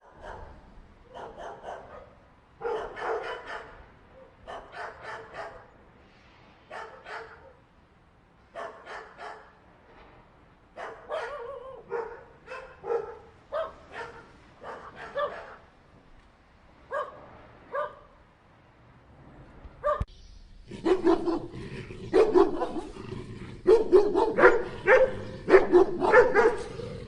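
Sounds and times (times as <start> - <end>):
dog barking: 0.0 - 5.7, 6.7 - 7.6, 8.6 - 9.6, 10.8 - 15.7, 16.9 - 18.2, 19.8 - 20.1, 20.8 - 23.0, 23.6 - 26.8.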